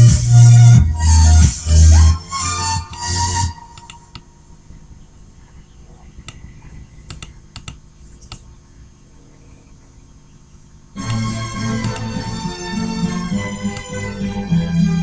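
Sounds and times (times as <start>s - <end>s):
music: 0.0s - 4.4s, 11.0s - 15.0s
low steady hum: 1.9s - 15.0s
keyboard keystrokes clicking: 7.1s - 8.4s, 11.8s - 12.1s.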